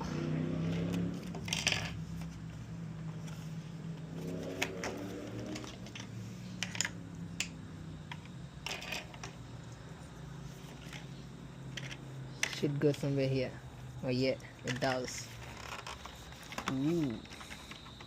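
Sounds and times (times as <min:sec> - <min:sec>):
steady low hum: 0:00.0 - 0:18.0
small plastic parts clicking: 0:04.6 - 0:09.4, 0:11.7 - 0:12.7.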